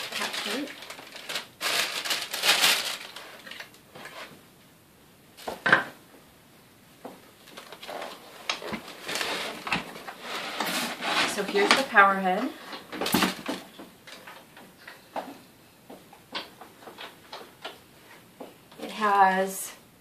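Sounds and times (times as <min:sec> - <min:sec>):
packaging rustling: 0:00.0 - 0:04.3, 0:07.4 - 0:11.9
plastic parts knocking together: 0:12.9 - 0:14.2.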